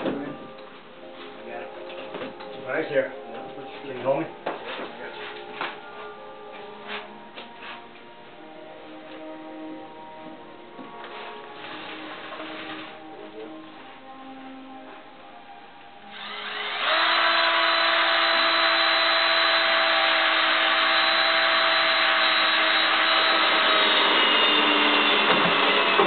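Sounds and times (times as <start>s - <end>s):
machine motor whirring: 16.1s - 26.0s.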